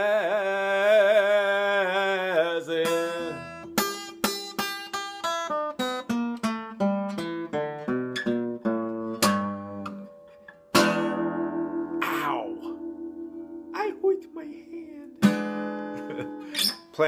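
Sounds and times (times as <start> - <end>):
blues guitar picked notes: 2.7 - 17.0
guitar chord struck: 10.8 - 14.4.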